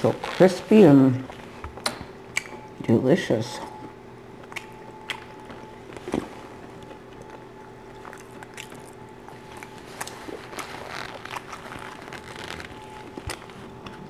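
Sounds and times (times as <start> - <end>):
wet mouth clicks: 1.8 - 2.6, 4.4 - 5.5, 7.9 - 9.0
chewing crusty bread: 3.7 - 14.0.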